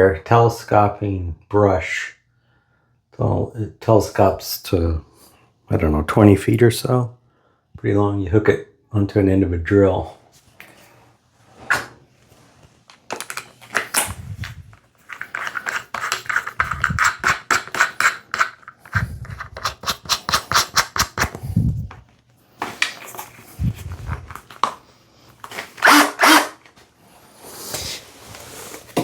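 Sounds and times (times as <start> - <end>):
brush rod clicking and rattling: 15.1 - 21.4.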